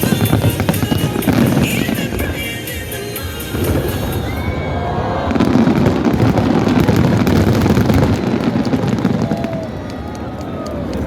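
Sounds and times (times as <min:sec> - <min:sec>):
fireworks popping and crackling: 0:00.0 - 0:11.0
fireworks rumble: 0:00.0 - 0:11.0.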